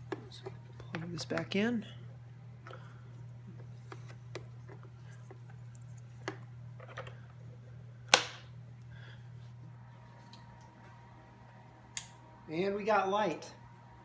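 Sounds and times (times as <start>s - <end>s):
steady low hum: 0.0s - 14.0s
plug and cord clicks: 8.1s - 8.5s.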